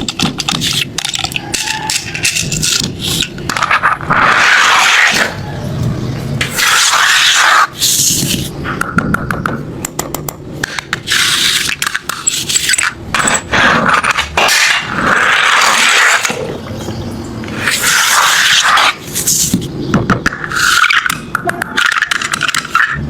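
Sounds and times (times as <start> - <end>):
toy cars rolling along track: 0.0 - 5.3, 20.5 - 23.0.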